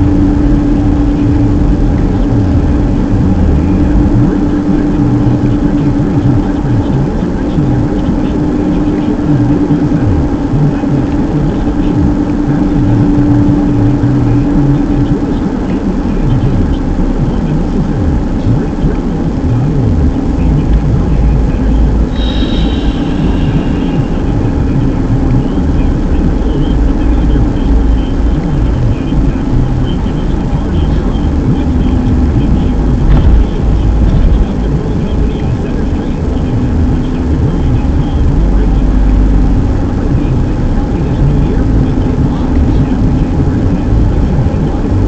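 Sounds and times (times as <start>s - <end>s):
car engine and road noise: 0.0s - 45.0s
steady hum: 0.0s - 45.0s.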